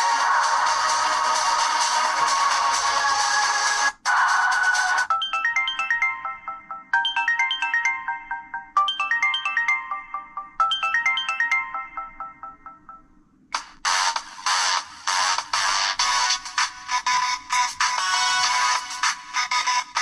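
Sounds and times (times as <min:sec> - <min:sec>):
phone ringtone melody: 0:05.1 - 0:13.3, 0:15.6 - 0:20.0.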